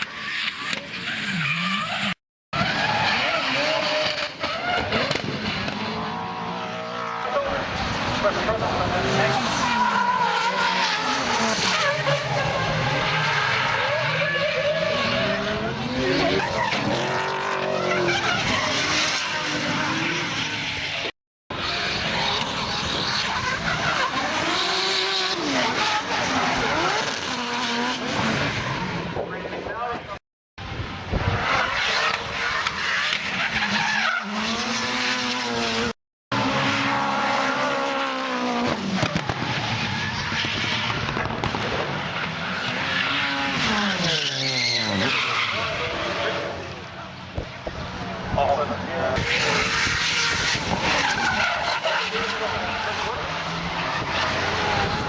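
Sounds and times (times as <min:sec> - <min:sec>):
car engines revving: 0:00.0 - 0:55.0
tyres screeching: 0:42.7 - 0:46.4.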